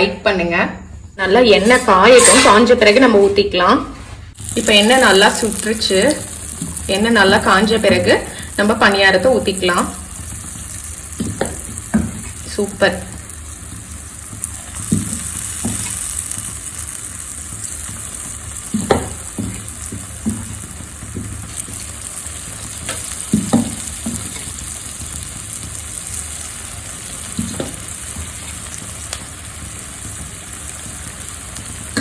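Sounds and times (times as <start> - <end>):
batter sizzling in oil: 4.3 - 32.0
utensil knocking on pan: 18.7 - 21.3, 22.9 - 24.3.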